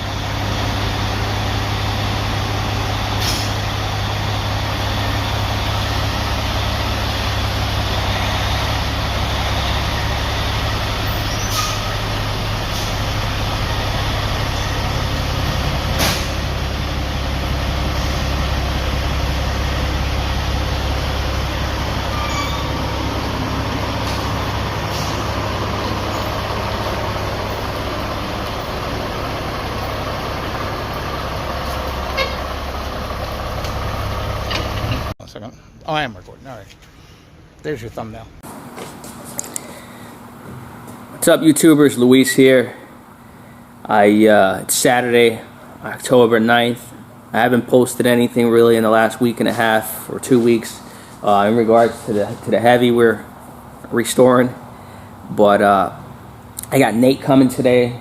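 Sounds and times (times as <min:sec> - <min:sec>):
truck engine running: 0:00.0 - 0:35.2, 0:37.8 - 0:58.0.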